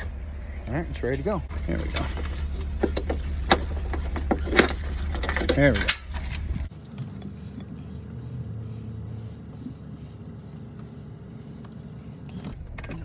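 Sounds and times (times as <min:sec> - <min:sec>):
heavier low rumble: 0:00.0 - 0:06.7
vehicle engine rumbling: 0:00.0 - 0:13.0.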